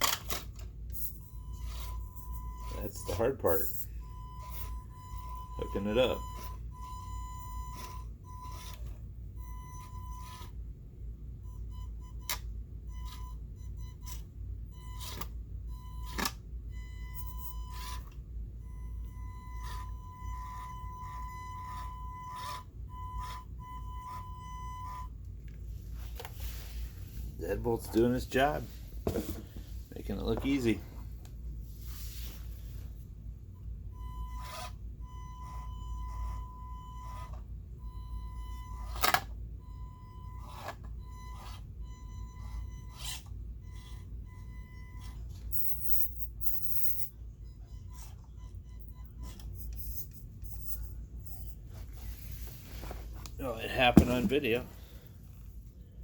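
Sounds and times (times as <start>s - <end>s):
small electric motor whining: 1.0s - 10.6s, 16.9s - 18.2s, 19.0s - 25.1s, 34.0s - 37.4s, 40.2s - 46.0s.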